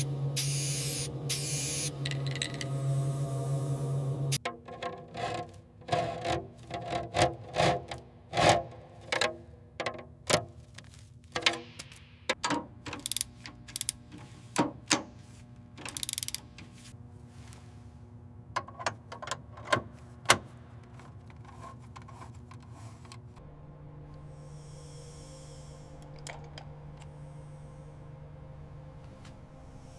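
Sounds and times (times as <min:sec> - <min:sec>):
mechanical clicks and knocks: 0:11.3 - 0:15.1, 0:15.8 - 0:16.7
faint hum: 0:13.3 - 0:29.9.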